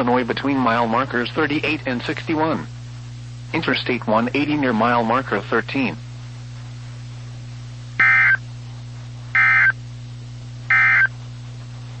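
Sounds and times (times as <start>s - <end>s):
steady low hum: 0.0s - 12.0s
short digital buzzing bursts: 8.0s - 8.4s, 9.4s - 9.7s, 10.7s - 11.1s.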